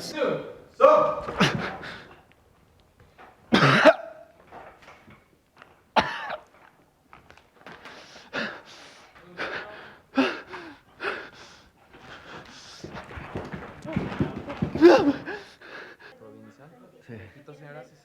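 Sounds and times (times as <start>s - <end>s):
person coughing and gasping: 3.5s - 4.3s, 6.0s - 6.5s, 14.6s - 15.5s
person crying out loudly: 14.8s - 15.4s.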